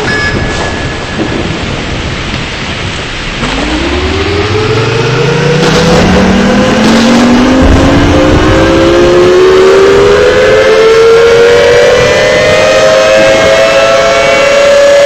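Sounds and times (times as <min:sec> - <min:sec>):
loud rushing noise: 0:00.0 - 0:15.0
dual-tone siren winding up: 0:03.4 - 0:15.0.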